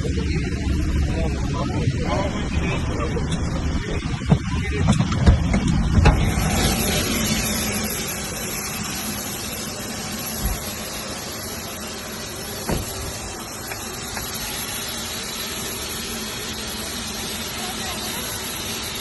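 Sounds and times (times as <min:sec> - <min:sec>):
airplane cabin rushing noise: 0:00.0 - 0:15.0.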